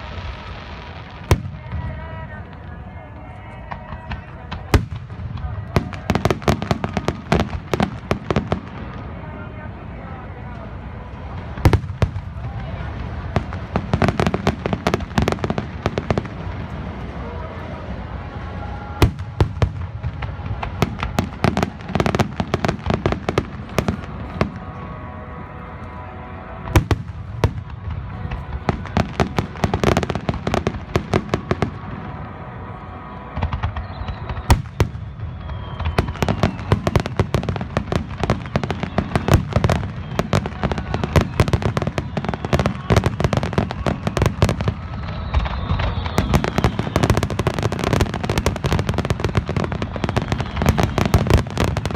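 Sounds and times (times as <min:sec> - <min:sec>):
fireworks cracks and booms: 0:00.0 - 0:25.0, 0:26.6 - 0:32.4, 0:33.3 - 0:51.9
faint falling whistle: 0:33.4 - 0:37.6, 0:38.2 - 0:51.9.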